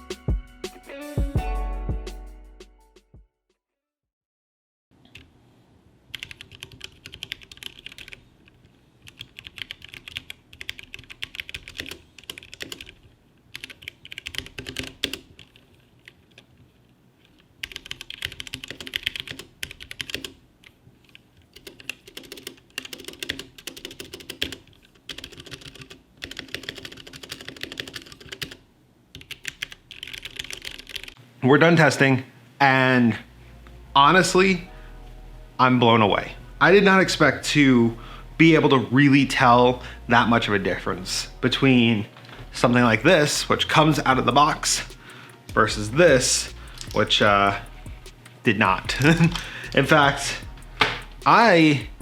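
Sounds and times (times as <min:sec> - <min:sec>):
mechanical keyboard keys clacking: 0:06.1 - 0:08.2, 0:09.1 - 0:16.4, 0:17.3 - 0:20.4, 0:21.0 - 0:28.6, 0:29.2 - 0:31.2, 0:46.6 - 0:47.5, 0:48.6 - 0:50.0.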